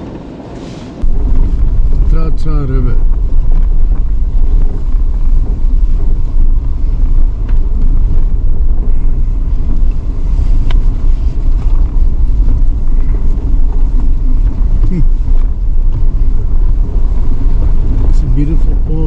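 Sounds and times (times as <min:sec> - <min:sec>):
vehicle rumble on dirt road: 0:00.0 - 0:19.0.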